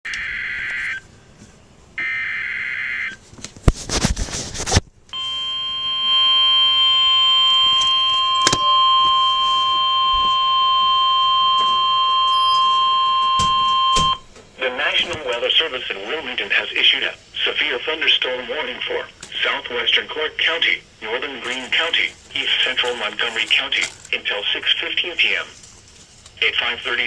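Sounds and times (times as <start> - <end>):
steady alert tone: 5.2 - 14.2
static crackle: 17.4 - 27.0.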